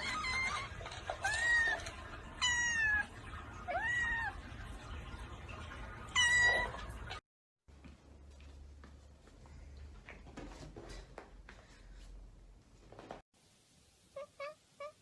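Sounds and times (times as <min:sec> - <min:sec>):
cat meowing: 0:03.7 - 0:04.4.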